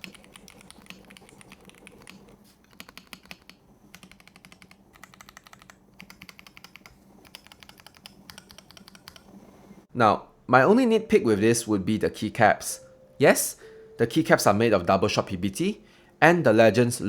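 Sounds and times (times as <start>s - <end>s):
typing on mechanical keyboard: 0.0s - 9.3s.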